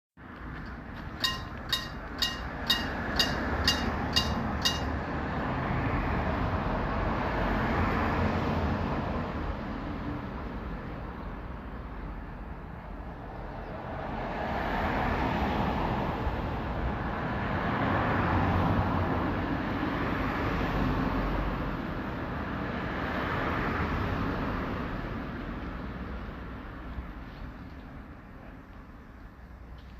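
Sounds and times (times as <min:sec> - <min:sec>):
railway crossing bell striking: 0:01.2 - 0:05.2.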